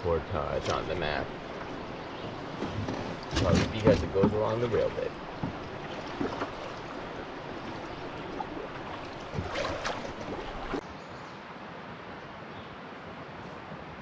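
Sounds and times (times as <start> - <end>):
bumps: 0.6 - 10.8.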